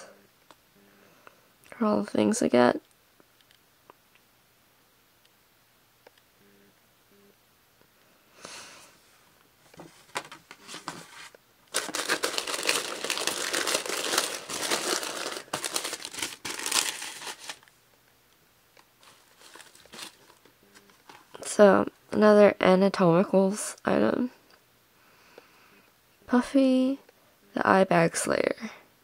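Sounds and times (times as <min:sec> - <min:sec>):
packaging crinkling: 0:09.8 - 0:17.7, 0:19.0 - 0:21.4.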